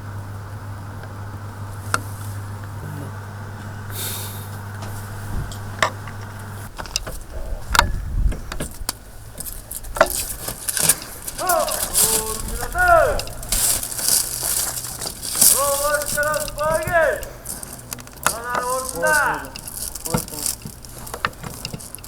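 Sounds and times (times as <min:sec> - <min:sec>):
car engine idling: 0:00.0 - 0:22.0
low rumbling: 0:00.0 - 0:22.0
sharp clicks and knocks: 0:04.8 - 0:22.0.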